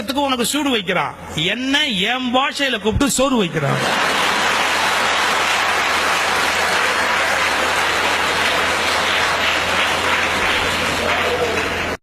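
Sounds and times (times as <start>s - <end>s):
audience applauding: 3.8s - 12.0s.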